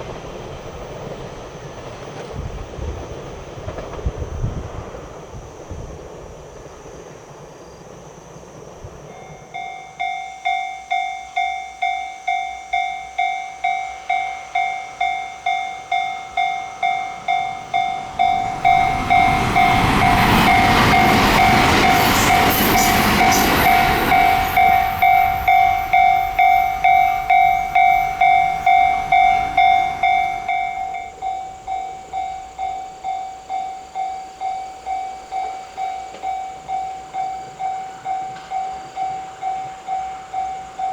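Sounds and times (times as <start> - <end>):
train rumbling: 0.0 - 40.9
level-crossing bell dinging: 9.1 - 40.9.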